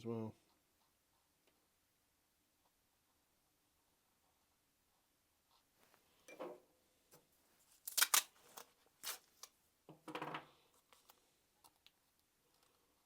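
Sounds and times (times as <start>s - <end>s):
masking tape ripping: 7.8s - 9.5s.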